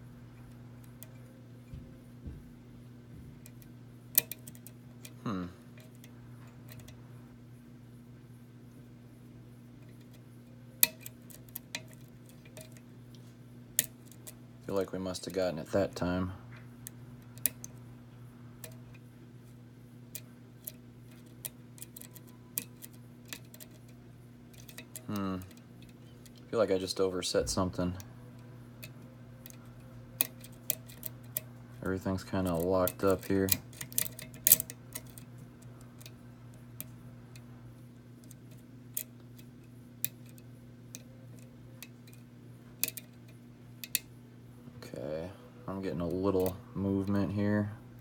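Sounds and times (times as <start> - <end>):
steady low hum: 0.0 - 48.0
lock pick clicking on pins: 3.4 - 5.2, 5.8 - 7.0, 9.8 - 12.8, 16.8 - 17.8, 18.6 - 19.0, 20.1 - 26.5, 27.8 - 31.6, 32.2 - 37.5, 38.2 - 44.1
metallic clicks of lock pick: 20.1 - 23.9, 30.2 - 31.5, 32.5 - 36.2.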